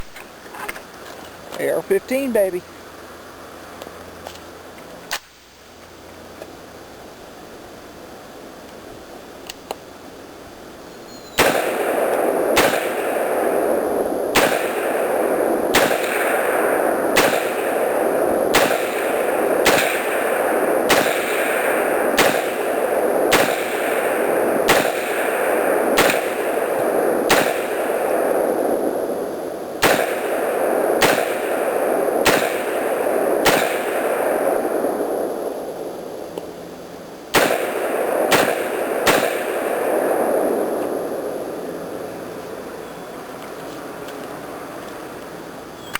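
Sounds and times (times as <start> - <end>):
rifle shots: 11.4 - 28.8, 29.8 - 34.9, 37.3 - 41.2.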